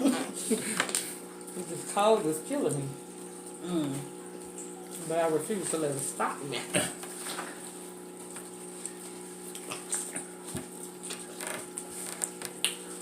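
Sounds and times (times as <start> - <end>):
chewing clicks and smacks: 8.3 - 13.0.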